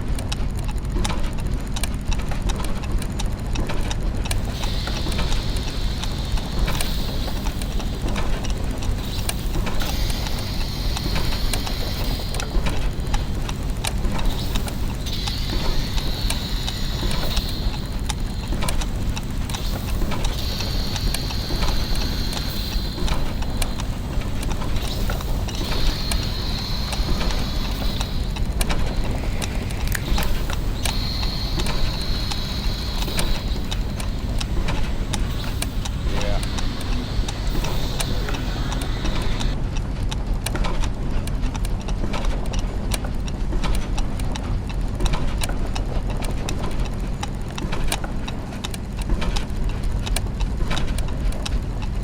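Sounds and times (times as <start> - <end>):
low machine hum: 0.0 - 39.6
gears ticking and clicking: 0.0 - 52.0
hissing whir: 4.2 - 39.6.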